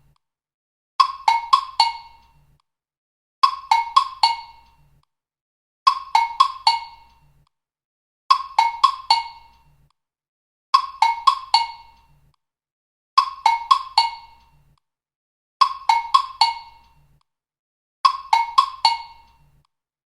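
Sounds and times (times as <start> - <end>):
plucked ringtone notes: 10.9 - 12.0, 13.3 - 14.4, 15.7 - 16.9, 18.1 - 19.4.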